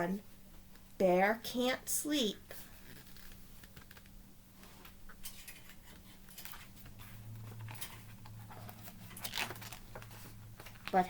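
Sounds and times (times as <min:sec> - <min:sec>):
low steady hum: 0:00.0 - 0:11.0
picture book pages rustling: 0:02.5 - 0:04.9, 0:05.8 - 0:11.0.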